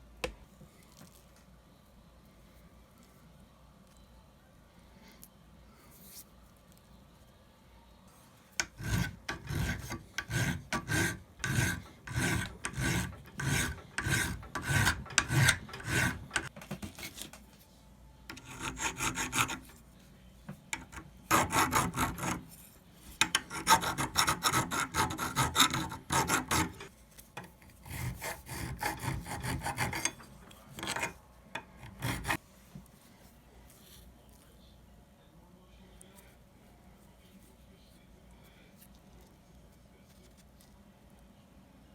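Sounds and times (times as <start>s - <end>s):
file strokes: 8.6s - 17.3s, 18.3s - 19.8s, 20.8s - 32.4s.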